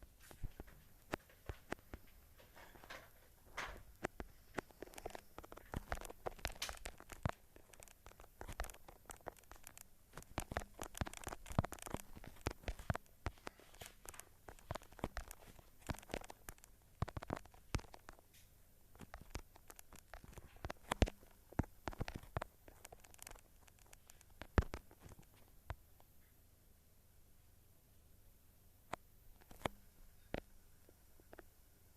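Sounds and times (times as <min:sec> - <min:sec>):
rustling: 0:00.0 - 0:26.2
irregular clicks and crackles: 0:00.0 - 0:26.4, 0:28.9 - 0:31.6.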